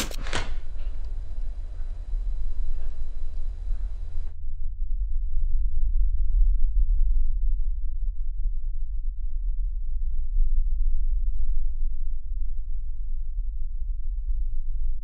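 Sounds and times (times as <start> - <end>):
faint high whine: 0.0 - 4.3.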